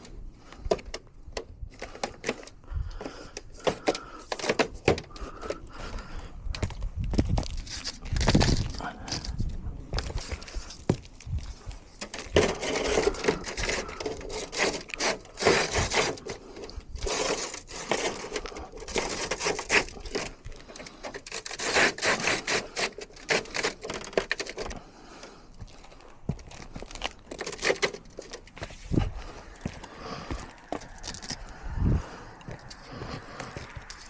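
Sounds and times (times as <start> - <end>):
hands scraping in rain gutter: 7.4 - 9.3, 10.0 - 31.6.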